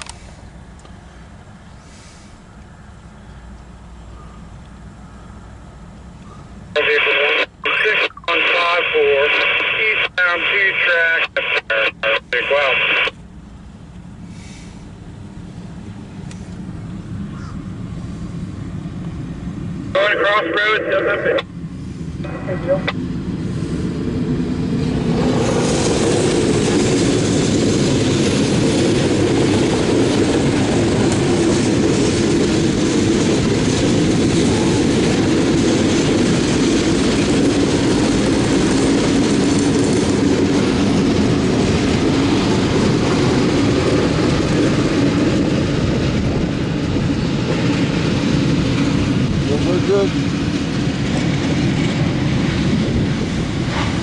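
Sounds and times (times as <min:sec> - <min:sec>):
freight train wheels rumbling on rails: 0:21.0 - 0:54.0.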